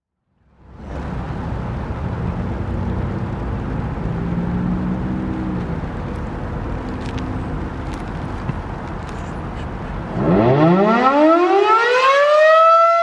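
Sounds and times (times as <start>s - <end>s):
warning siren low rumble: 9.9s - 13.0s.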